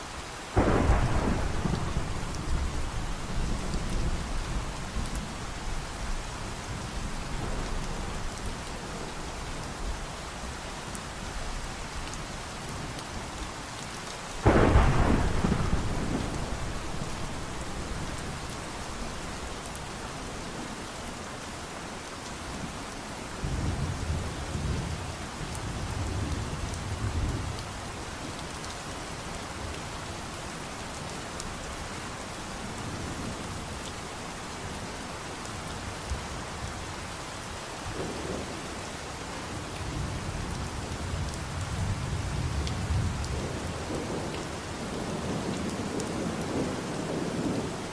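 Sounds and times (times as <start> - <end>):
steady rain falling: 0.0 - 47.9
sharp thunderclap: 0.6 - 4.4, 14.4 - 18.2
low rumbles of thunder: 0.6 - 8.7, 14.4 - 19.5, 39.8 - 47.8.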